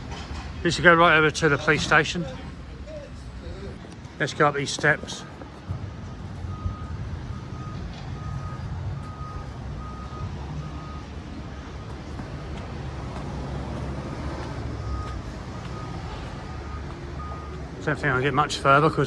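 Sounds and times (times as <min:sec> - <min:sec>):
heavy machinery engine rumble: 0:00.0 - 0:19.0
reversing alarm beeping: 0:05.1 - 0:19.0.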